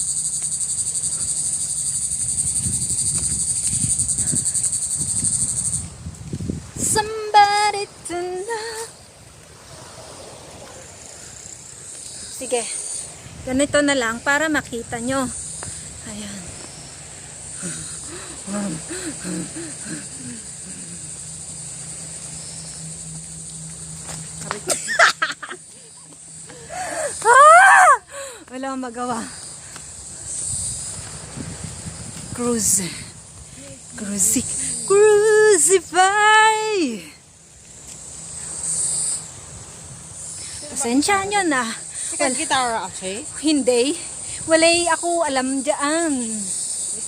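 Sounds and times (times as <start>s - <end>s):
insects buzzing: 0.0s - 47.0s
person vocalizing short notes: 17.6s - 21.1s.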